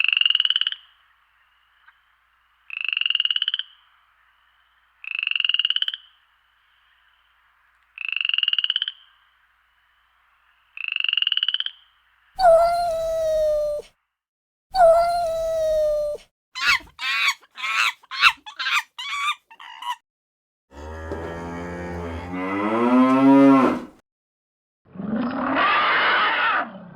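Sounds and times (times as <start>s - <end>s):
animal calls: 12.4s - 13.9s, 14.8s - 20.0s, 25.2s - 26.9s.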